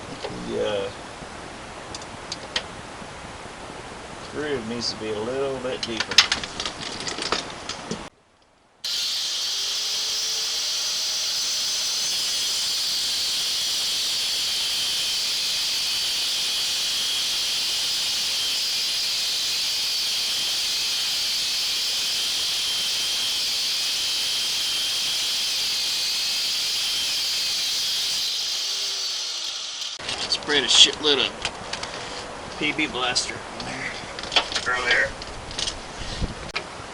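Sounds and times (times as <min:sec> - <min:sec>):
cut-off wheel grinding metal: 0:08.8 - 0:30.0.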